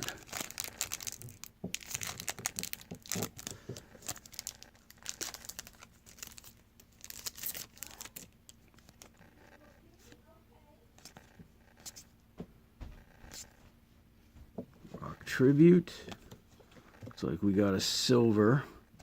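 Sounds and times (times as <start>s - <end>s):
card pack crinkling and rustling: 0.0s - 9.3s.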